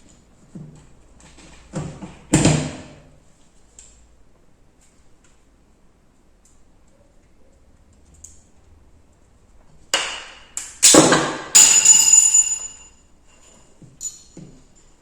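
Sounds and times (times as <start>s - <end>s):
sharp metal strikes ringing: 10.8s - 12.9s.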